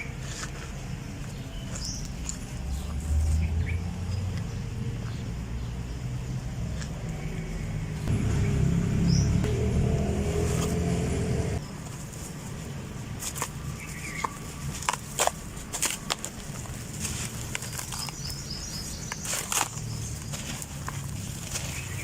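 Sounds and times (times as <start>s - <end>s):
low rumble: 8.0s - 11.6s
dirt lumps crumbling and crunching: 13.1s - 22.0s.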